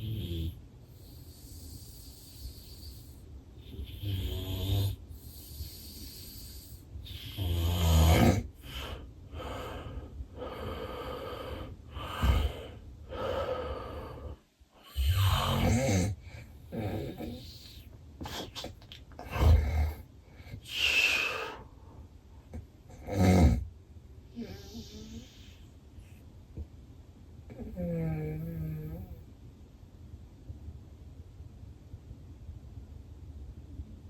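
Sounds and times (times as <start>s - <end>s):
man snoring heavily: 0.0s - 3.1s, 3.7s - 9.8s, 10.4s - 17.5s, 19.3s - 20.0s, 23.0s - 23.6s
noisy breathing: 0.0s - 23.7s.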